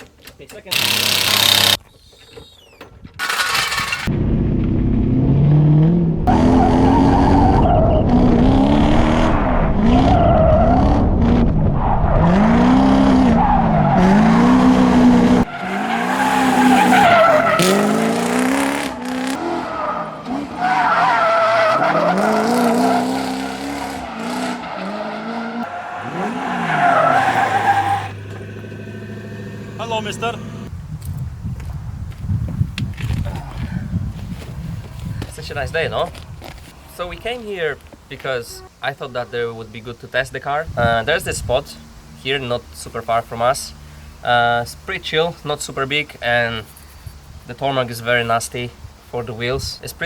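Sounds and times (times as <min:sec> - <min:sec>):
car engine revving: 0:03.2 - 0:30.7
tyres squealing on tarmac: 0:15.5 - 0:17.9, 0:19.5 - 0:28.2.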